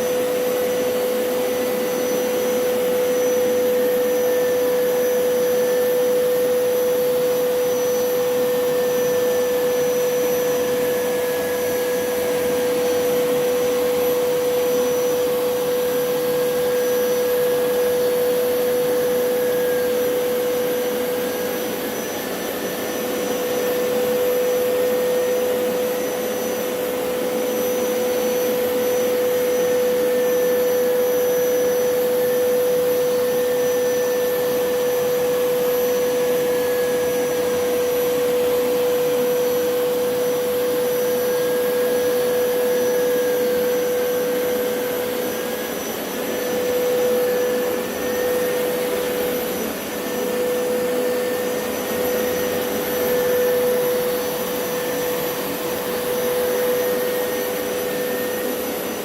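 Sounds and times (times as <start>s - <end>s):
carpet washer running: 0.0s - 59.0s.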